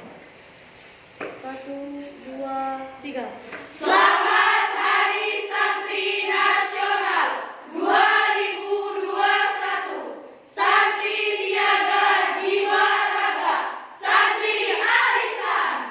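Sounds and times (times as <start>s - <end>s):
girls' choir singing: 3.7s - 15.9s.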